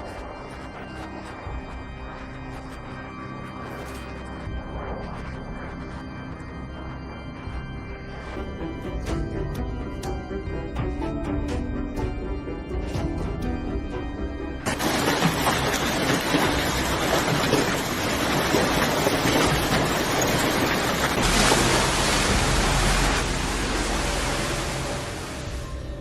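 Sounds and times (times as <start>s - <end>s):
loud steady rushing noise: 14.7s - 26.0s.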